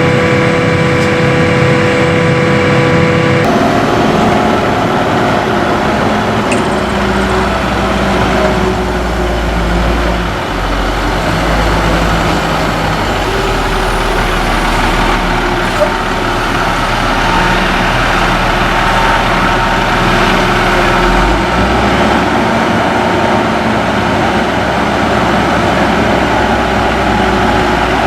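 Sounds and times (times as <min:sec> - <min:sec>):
forage harvester diesel engine: 0:00.0 - 0:28.0
deep low hum: 0:02.6 - 0:23.5.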